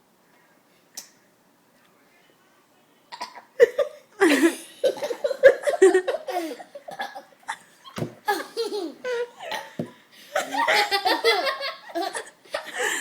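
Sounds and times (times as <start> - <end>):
cough-like outburst: 3.1 - 3.6
person laughing in rough bursts: 3.6 - 7.6, 8.2 - 9.8, 10.4 - 13.0.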